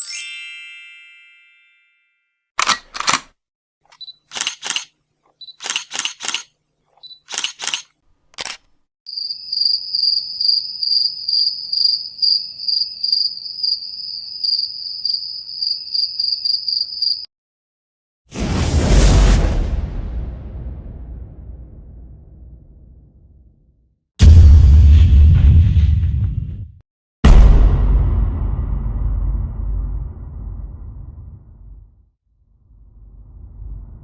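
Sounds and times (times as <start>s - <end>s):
camera shutter clicking: 2.6s - 3.3s, 3.9s - 8.7s
cricket chirping: 9.1s - 17.3s.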